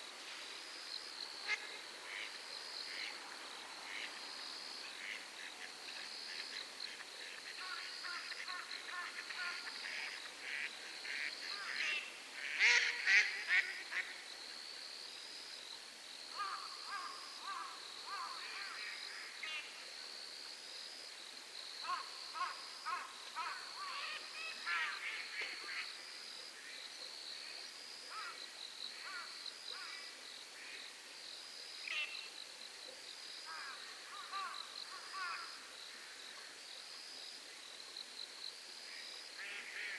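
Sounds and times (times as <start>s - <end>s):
insect chirping: 0.0s - 39.9s.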